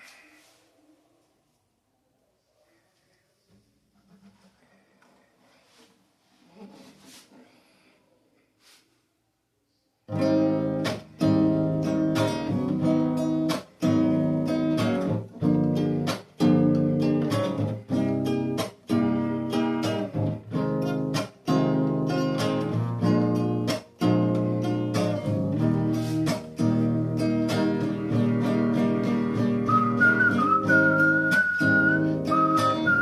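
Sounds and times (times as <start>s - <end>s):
acoustic guitar strumming chords: 10.1s - 33.0s.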